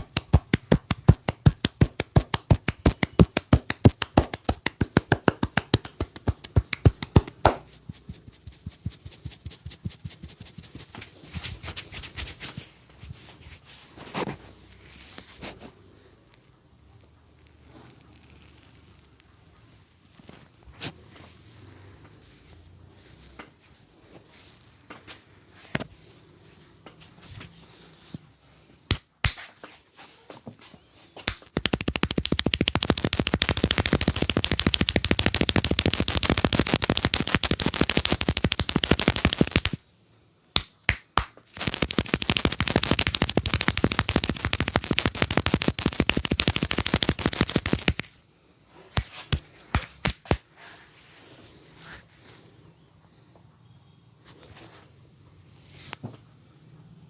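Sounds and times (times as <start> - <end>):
hands patting during massage: 0.0 - 13.6, 28.9 - 29.8, 31.2 - 39.8, 40.6 - 48.2, 48.9 - 50.5.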